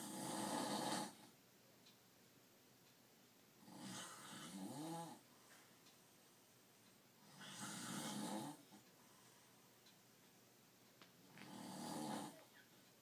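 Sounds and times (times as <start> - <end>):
person snoring: 0.0 - 1.2, 3.6 - 5.2, 7.2 - 8.7, 11.4 - 12.5.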